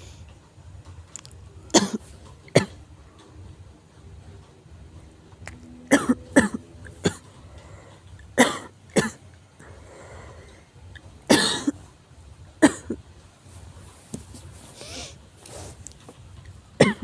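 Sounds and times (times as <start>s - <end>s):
person coughing harshly: 1.7s - 2.8s, 5.9s - 7.4s, 8.4s - 9.3s, 11.3s - 11.8s, 12.6s - 13.0s, 16.8s - 17.0s.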